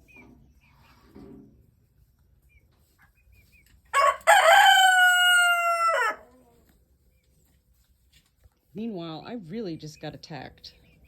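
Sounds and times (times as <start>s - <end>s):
rooster crowing: 3.9s - 6.3s.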